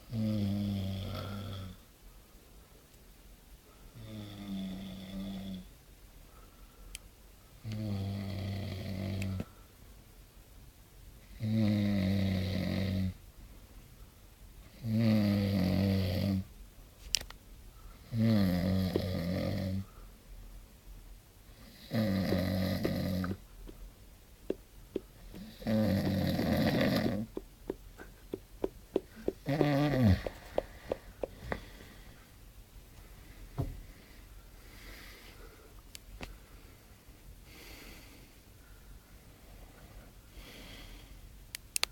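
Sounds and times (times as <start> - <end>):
man snoring: 0.1 - 1.8, 4.0 - 5.7, 7.7 - 9.4, 11.4 - 13.2, 14.7 - 16.5, 18.0 - 19.9, 21.6 - 23.4, 25.3 - 27.4, 29.0 - 30.7.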